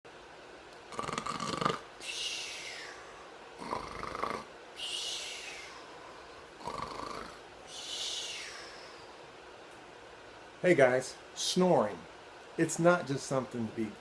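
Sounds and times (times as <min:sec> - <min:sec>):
person snoring: 0:00.9 - 0:09.1.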